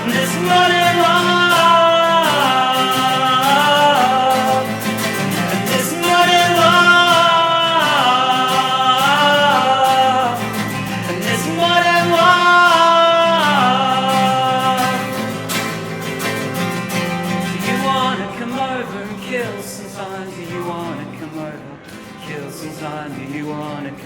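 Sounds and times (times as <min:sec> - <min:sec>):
man singing long held notes: 0:00.0 - 0:15.8
strummed acoustic guitar: 0:00.0 - 0:24.0.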